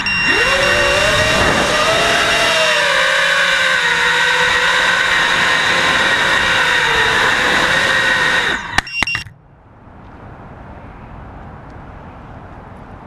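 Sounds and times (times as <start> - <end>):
drone motors whining: 0.0 - 9.3.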